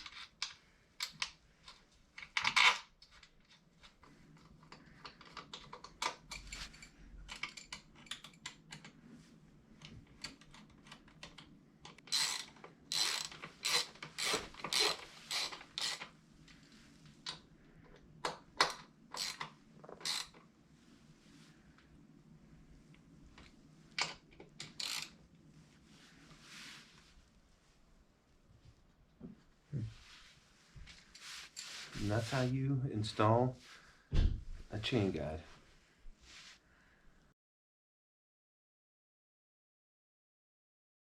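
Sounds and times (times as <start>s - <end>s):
ratchet clicking: 12.0s - 16.1s, 19.1s - 20.4s, 24.6s - 25.1s.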